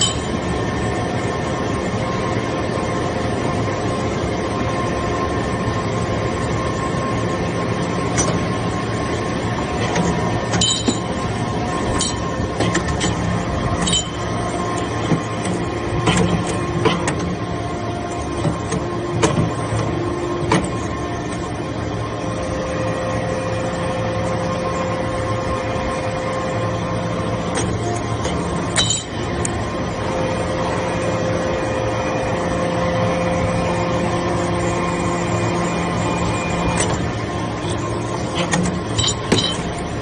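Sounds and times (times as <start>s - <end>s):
high held machine tone: 0.0s - 3.1s, 10.6s - 12.5s, 13.3s - 15.0s, 20.0s - 40.0s
hydraulic baler humming: 0.0s - 40.0s.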